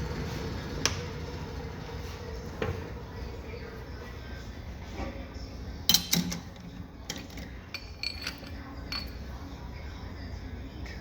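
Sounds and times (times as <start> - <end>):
steel tools clinking together: 5.9 - 9.2.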